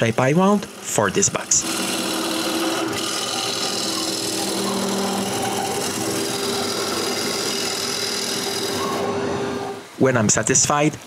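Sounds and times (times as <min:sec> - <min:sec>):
wood lathe humming: 0:00.0 - 0:10.0
turning tool cutting hiss: 0:01.5 - 0:09.7.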